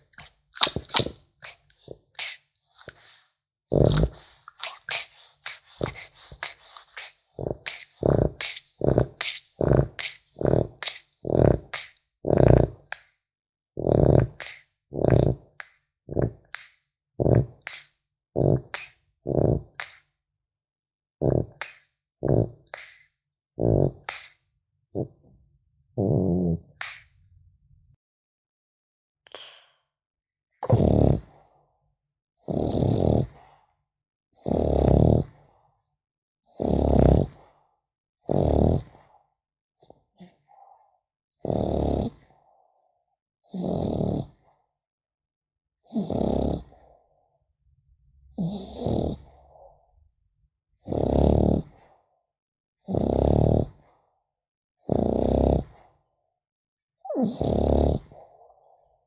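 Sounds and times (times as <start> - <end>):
puppy snoring: 1.0 - 13.1, 13.8 - 16.6, 17.2 - 20.1, 21.2 - 24.4, 26.0 - 27.1, 30.6 - 31.4, 32.4 - 33.5, 34.4 - 35.4, 36.5 - 37.5, 38.3 - 39.1, 41.4 - 42.3, 43.5 - 44.4, 45.9 - 46.9, 48.3 - 49.7, 50.8 - 51.8, 52.8 - 53.9, 54.8 - 55.8, 57.0 - 58.4.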